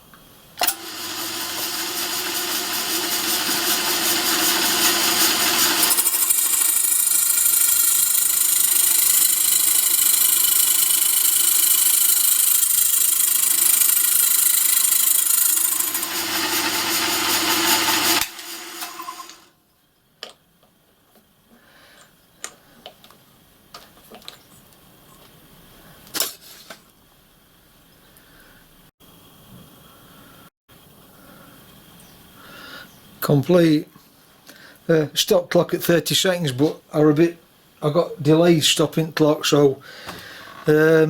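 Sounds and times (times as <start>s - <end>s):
milling machine running: 0.6s - 19.4s.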